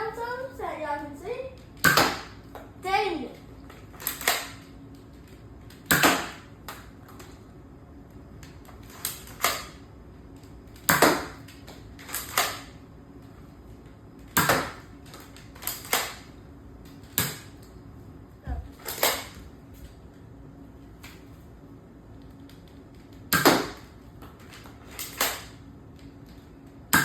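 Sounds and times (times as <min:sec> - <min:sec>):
darts striking target: 0:01.8 - 0:02.4, 0:05.9 - 0:06.5, 0:10.9 - 0:11.4, 0:14.4 - 0:14.8, 0:23.3 - 0:23.9
toy blaster firing foam darts: 0:01.8 - 0:02.5, 0:03.9 - 0:04.7, 0:05.7 - 0:06.9, 0:08.9 - 0:09.8, 0:10.8 - 0:12.8, 0:14.2 - 0:16.3, 0:17.1 - 0:17.6, 0:18.8 - 0:19.4, 0:23.3 - 0:24.0, 0:24.9 - 0:25.6.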